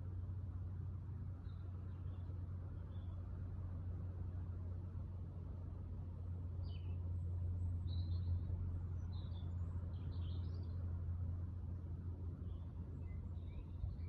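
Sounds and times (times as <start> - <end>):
small birds chirping: 7.8 - 10.8, 12.4 - 14.0.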